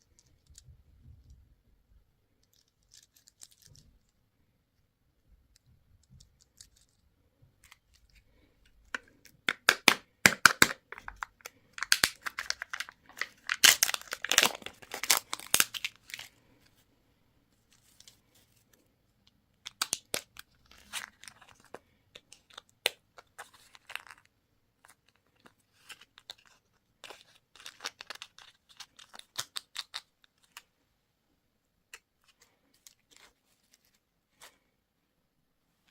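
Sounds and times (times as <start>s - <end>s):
candy wrapper crinkling: 2.4s - 4.1s, 7.7s - 16.5s, 19.6s - 30.7s.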